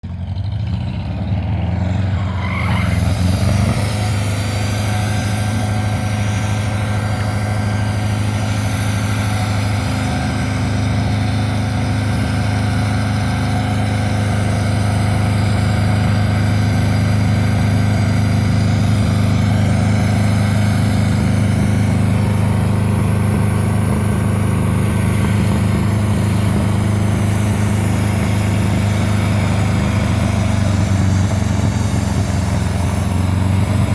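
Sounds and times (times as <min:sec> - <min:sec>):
sawmill engine drone: 0:00.0 - 0:33.9.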